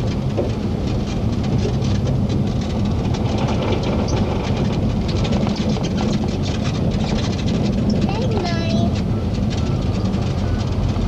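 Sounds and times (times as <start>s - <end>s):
storm wind buffeting microphone: 0.0s - 11.0s.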